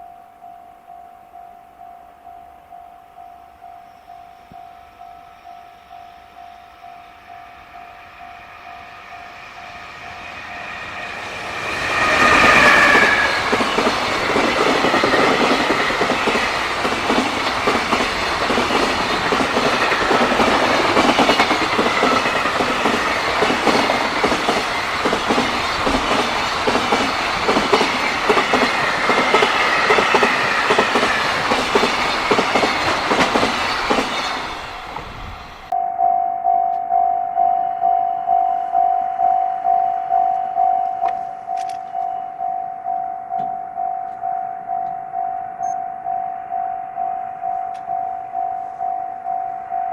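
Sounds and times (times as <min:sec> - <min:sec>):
level crossing warning bell: 0:00.0 - 0:31.5, 0:35.7 - 0:49.9
locomotive passing loudly: 0:08.0 - 0:35.7.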